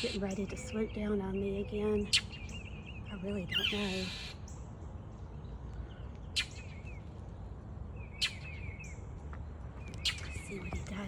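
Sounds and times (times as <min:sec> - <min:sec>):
bird chirping rapidly: 0:00.0 - 0:04.7, 0:08.0 - 0:09.0, 0:09.8 - 0:11.0.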